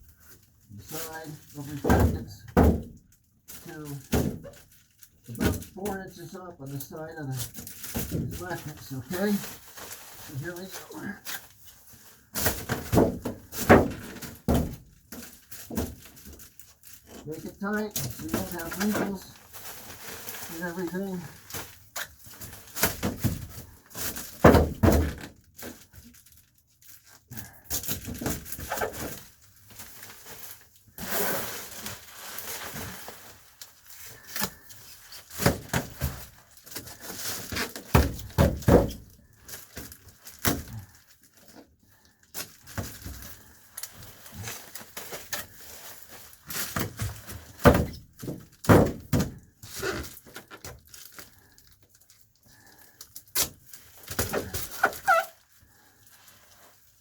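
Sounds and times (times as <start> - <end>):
foil insulation crinkling and rustling: 0.0 - 57.0.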